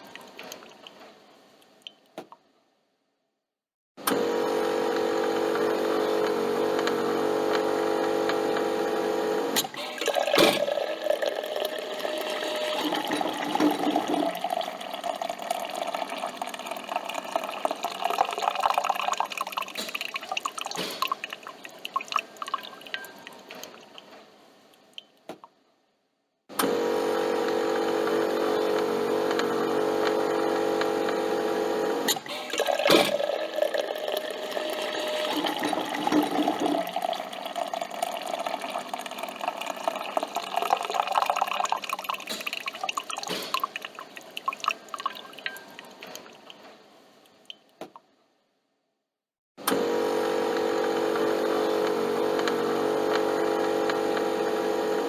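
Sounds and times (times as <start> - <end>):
coffee machine humming: 4.0 - 20.7, 26.6 - 43.8, 49.6 - 55.0
coffee trickling and dripping: 9.8 - 24.2, 27.3 - 47.8.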